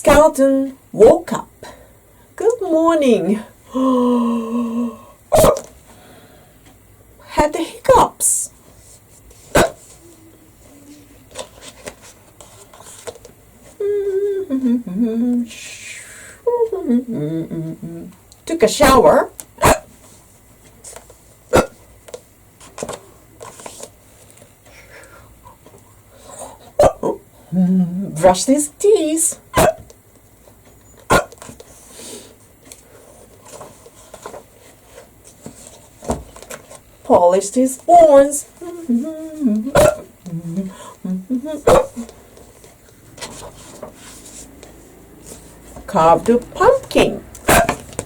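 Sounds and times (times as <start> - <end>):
person humming: 3.7 - 5.2, 13.8 - 18.2, 27.5 - 28.2, 38.6 - 42.1
person imitating a hiccup: 5.3 - 5.7, 9.6 - 9.8, 19.6 - 19.9, 21.5 - 21.8, 26.8 - 27.2, 29.5 - 29.9, 31.1 - 31.4, 39.4 - 40.5, 41.3 - 42.1.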